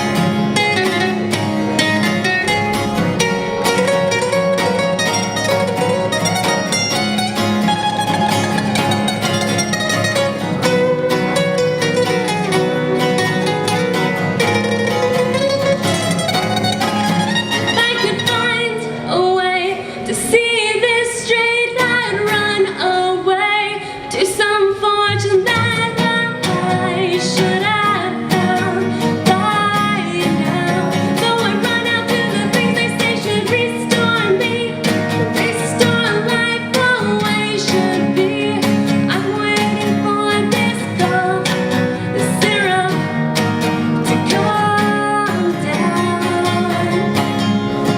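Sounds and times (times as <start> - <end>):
acoustic guitar: 0.0 - 47.9
person singing: 17.6 - 43.3, 44.0 - 47.9.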